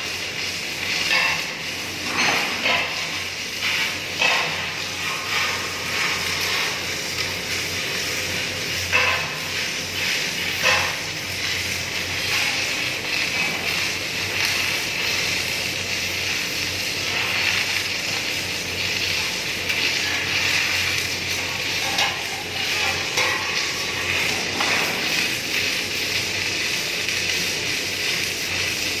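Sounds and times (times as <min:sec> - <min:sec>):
welding arc hissing: 0:00.0 - 0:29.0.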